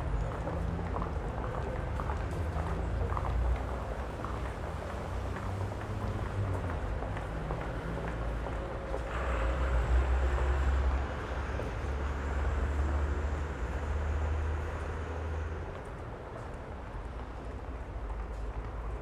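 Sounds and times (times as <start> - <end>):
street noise: 0.0 - 19.0
vehicle engine rumble: 0.0 - 19.0.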